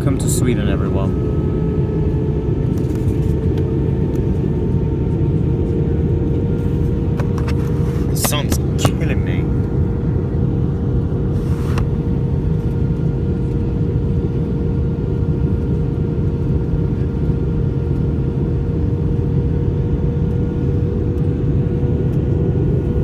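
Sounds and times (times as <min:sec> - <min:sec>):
jet engines droning: 0:00.0 - 0:23.0
steady hum tone: 0:00.0 - 0:23.0
airflow rushing: 0:06.6 - 0:10.0, 0:11.2 - 0:12.2.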